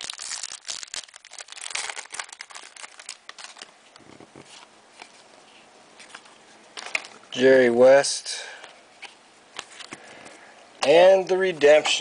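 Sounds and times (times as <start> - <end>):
wrapper tearing and crinkling: 0.0 - 4.1
cards being handled: 0.0 - 7.2, 9.0 - 10.4.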